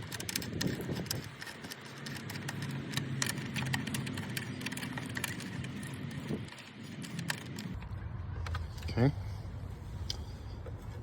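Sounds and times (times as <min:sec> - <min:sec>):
low steady hum: 0:02.7 - 0:11.0.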